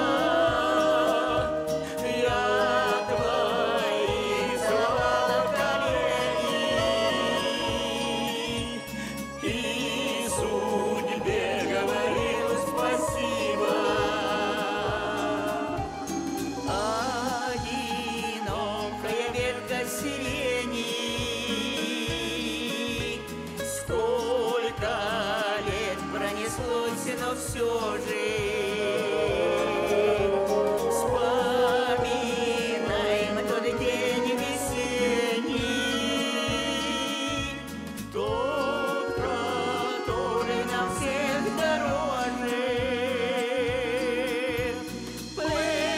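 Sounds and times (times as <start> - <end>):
instrumental backing: 0.0 - 45.9
vocal group singing: 0.0 - 45.9
steady bass beat: 27.6 - 43.2.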